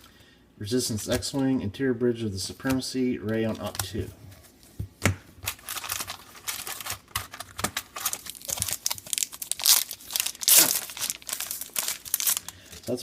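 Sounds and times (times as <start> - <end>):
wrapper being torn and crinkled: 5.5 - 13.0.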